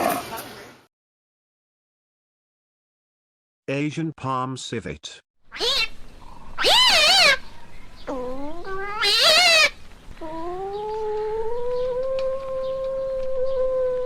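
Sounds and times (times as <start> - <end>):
civet calling: 5.5 - 12.8.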